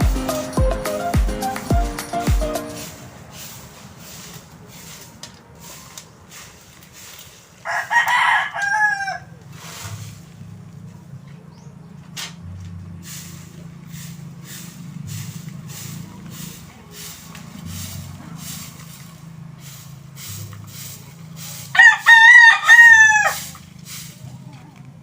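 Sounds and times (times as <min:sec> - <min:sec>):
faint scratching strokes: 0:02.7 - 0:07.7, 0:09.5 - 0:10.5, 0:13.0 - 0:21.7
rooster crowing: 0:07.6 - 0:09.4, 0:21.7 - 0:23.6.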